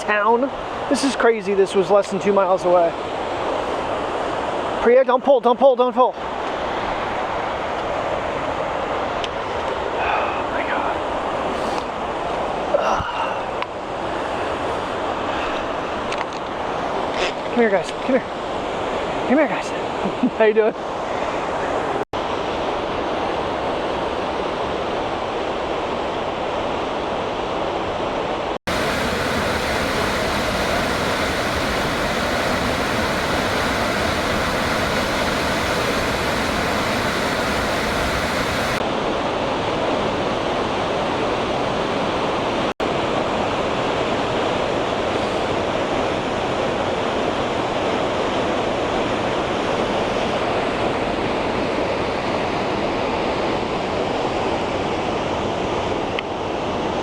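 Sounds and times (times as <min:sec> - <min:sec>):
water rushing down rocks: 0:28.7 - 0:38.8.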